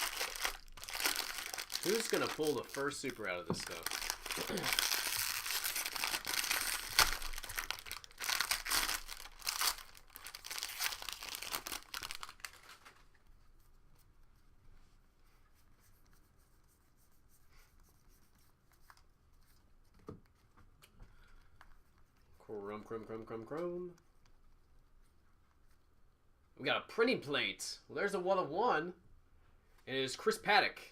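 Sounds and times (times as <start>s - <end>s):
foil wrapper tearing and crinkling: 0.0s - 13.0s
cards rustling and ticking: 0.0s - 13.2s.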